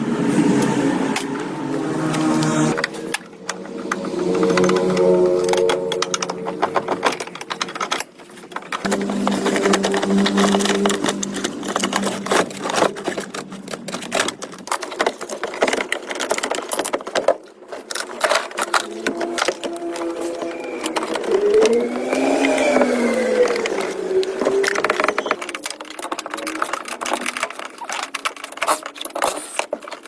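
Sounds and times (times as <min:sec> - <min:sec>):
electric motor hum: 0:08.8 - 0:13.8, 0:18.6 - 0:25.6.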